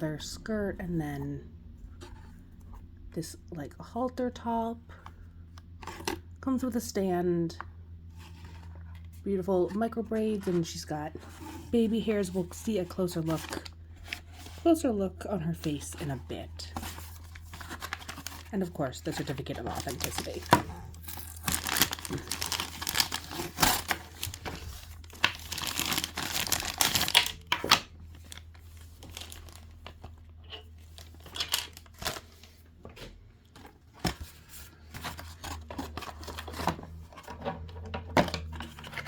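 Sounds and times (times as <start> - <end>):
steady low hum: 0.0 - 39.0
packaging crinkling and tearing: 16.8 - 18.5, 19.1 - 32.6.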